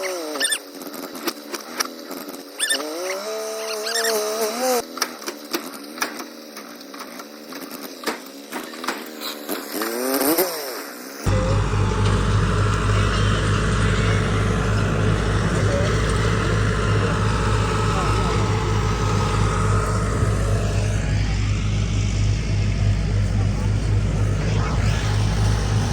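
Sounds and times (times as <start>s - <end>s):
straw-chopping thresher droning: 4.8s - 25.9s
faint high whine: 11.2s - 25.9s.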